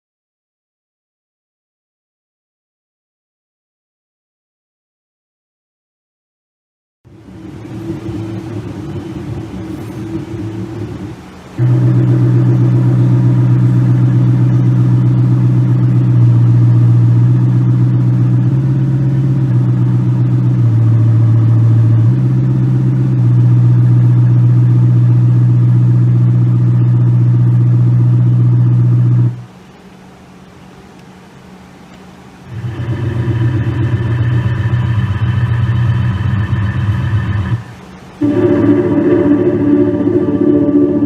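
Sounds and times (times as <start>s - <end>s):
synthetic engine drone: 7.1s - 29.5s, 32.5s - 41.0s.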